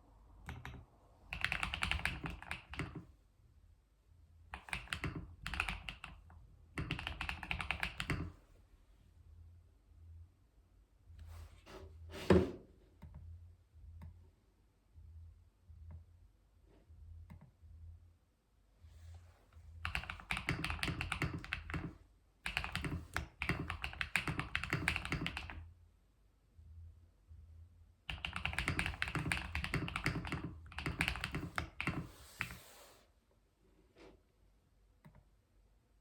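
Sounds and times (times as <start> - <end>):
typing on computer keyboard: 0.4 - 3.1, 4.5 - 8.4, 19.8 - 25.6, 28.1 - 32.6.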